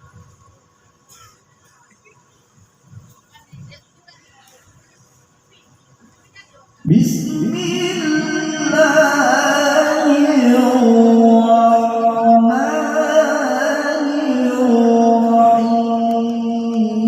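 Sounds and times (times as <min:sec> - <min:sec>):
man reciting in melodic chant: 0:06.8 - 0:17.0.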